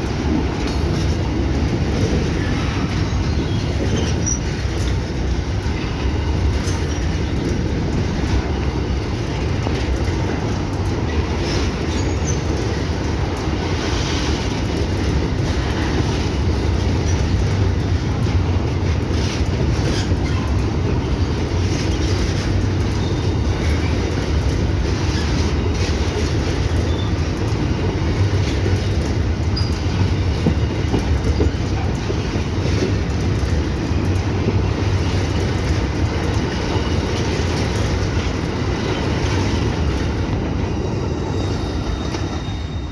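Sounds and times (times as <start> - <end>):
freight train rumbling on rails: 0.0 - 42.9
faint high squeaks and clicks: 2.8 - 5.0, 11.5 - 12.6, 29.4 - 31.8, 40.9 - 42.9.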